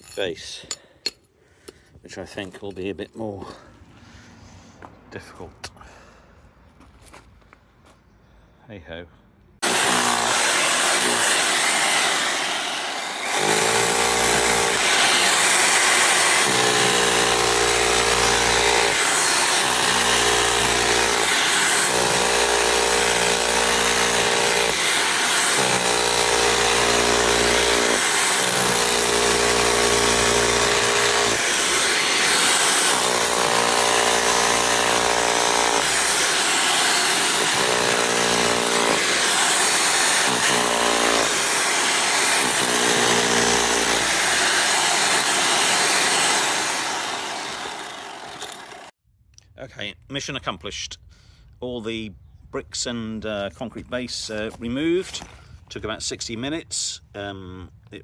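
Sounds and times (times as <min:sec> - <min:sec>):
rotary hammer breaking concrete: 0:09.6 - 0:48.9.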